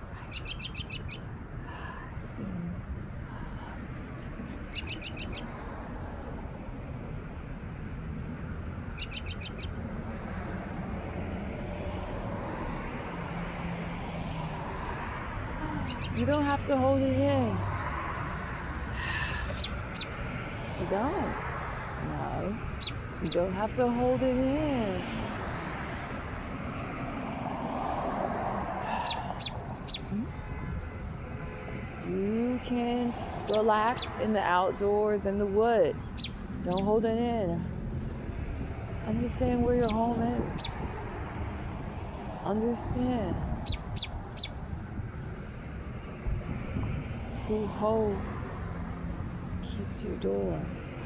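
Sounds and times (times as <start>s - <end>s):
low outdoor rumble: 0.0s - 51.0s
bird chirping: 0.3s - 1.2s, 4.6s - 5.5s, 9.0s - 9.8s, 29.0s - 30.3s, 36.1s - 37.0s, 43.6s - 44.6s.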